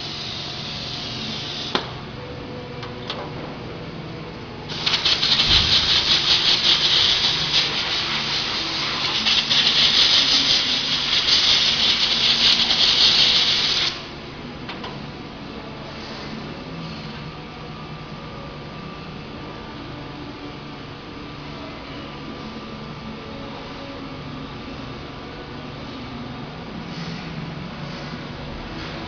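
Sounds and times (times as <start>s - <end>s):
machine rough hissing: 0.0s - 1.9s, 4.7s - 14.1s.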